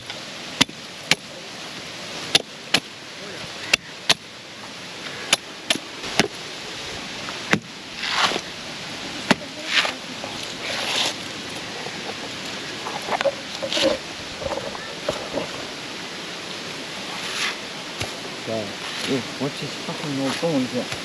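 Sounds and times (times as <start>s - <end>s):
machete chopping coconut: 0.6s - 1.4s, 2.3s - 2.9s, 3.7s - 4.3s, 5.3s - 6.4s, 7.5s - 8.4s
scraping sounds: 8.0s - 8.5s, 9.6s - 15.8s, 17.0s - 19.3s.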